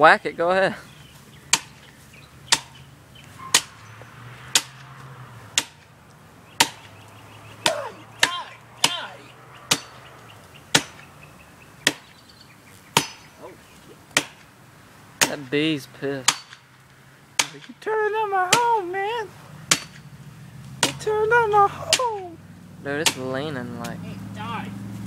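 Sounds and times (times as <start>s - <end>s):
blade chopping wood: 1.5s - 1.9s, 2.5s - 2.8s, 3.5s - 3.9s, 4.5s - 4.9s, 5.5s - 5.9s, 6.6s - 7.0s, 7.6s - 10.0s, 10.7s - 11.1s, 11.8s - 12.2s, 12.9s - 13.3s, 14.1s - 14.5s, 16.2s - 16.6s, 17.4s - 17.8s, 18.5s - 18.8s, 19.6s - 20.0s, 20.8s - 21.1s, 21.9s - 22.2s, 23.0s - 23.4s.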